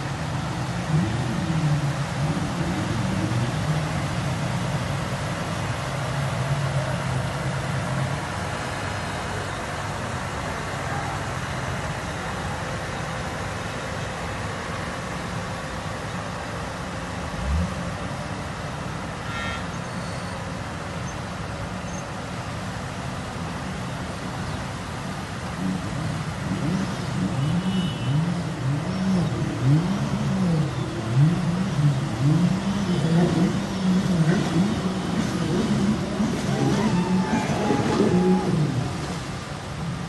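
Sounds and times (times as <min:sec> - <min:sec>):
engine running and revving: 0:00.0 - 0:09.4, 0:17.2 - 0:18.2, 0:25.4 - 0:40.0.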